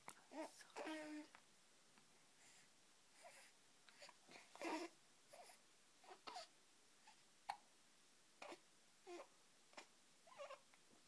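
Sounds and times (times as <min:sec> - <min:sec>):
baby hiccuping: 0:06.2 - 0:06.5.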